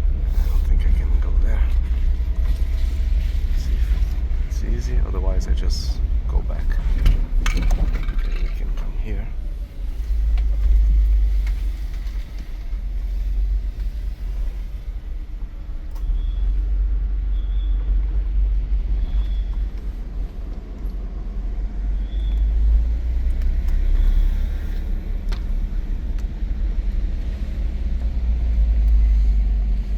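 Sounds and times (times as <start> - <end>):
car engine and tyres rumbling: 0.0 - 29.9
light clicks: 23.2 - 24.2.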